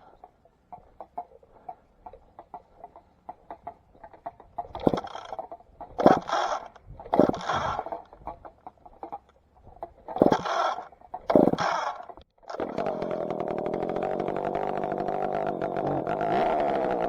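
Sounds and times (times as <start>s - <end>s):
chainsaw starter rope pulls: 4.6s - 9.3s, 10.0s - 17.0s.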